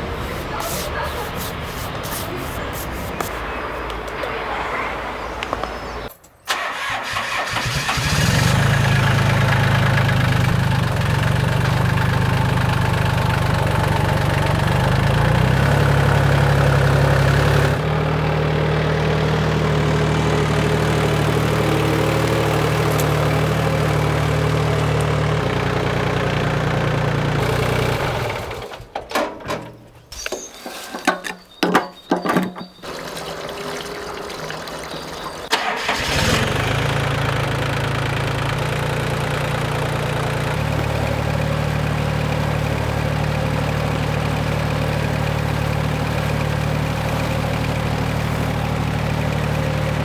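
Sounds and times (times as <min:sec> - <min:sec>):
sawmill engine running: 0:06.5 - 0:29.0, 0:32.7 - 0:50.0.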